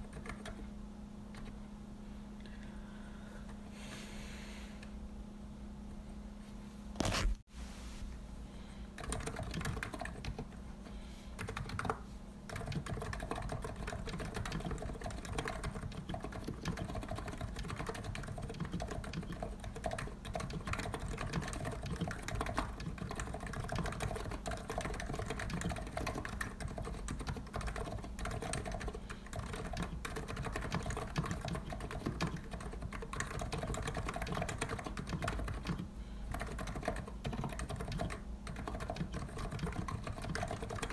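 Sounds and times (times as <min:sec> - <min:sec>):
fast keyboard typing: 0:00.0 - 0:00.7, 0:09.0 - 0:10.6, 0:11.4 - 0:40.9.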